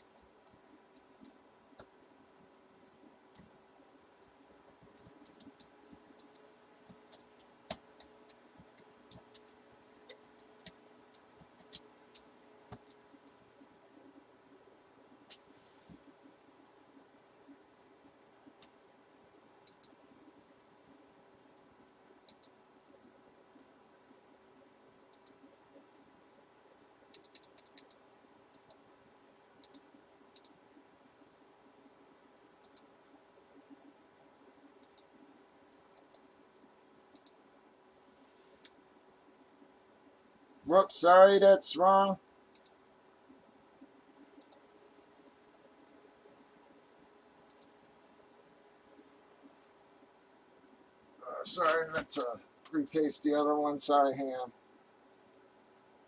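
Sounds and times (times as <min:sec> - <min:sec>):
low steady hum: 0:00.0 - 0:56.0
computer keyboard and mouse clicks: 0:04.8 - 0:13.4, 0:19.6 - 0:20.0, 0:22.2 - 0:22.6, 0:25.1 - 0:25.5, 0:27.1 - 0:28.8, 0:29.6 - 0:30.6, 0:32.6 - 0:32.9, 0:34.8 - 0:35.2, 0:35.9 - 0:36.3, 0:37.1 - 0:37.4, 0:42.5 - 0:42.8, 0:44.4 - 0:44.7, 0:47.5 - 0:47.8.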